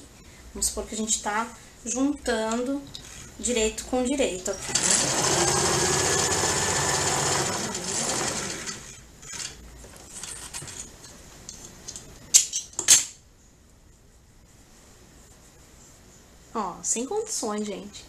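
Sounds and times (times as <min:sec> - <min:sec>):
sewing machine running: 0:04.6 - 0:09.0
handling noises: 0:09.2 - 0:13.2.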